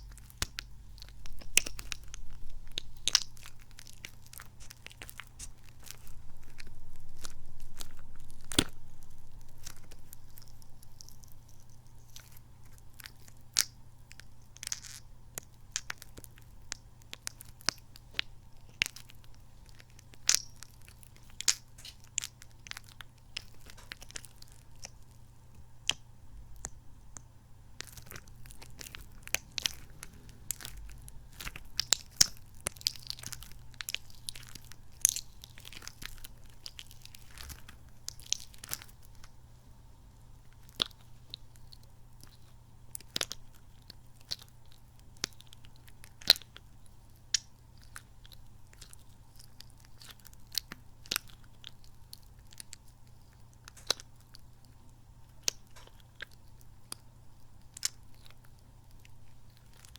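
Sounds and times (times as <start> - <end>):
squishy toy squelching: 0.0 - 13.7, 27.8 - 39.3.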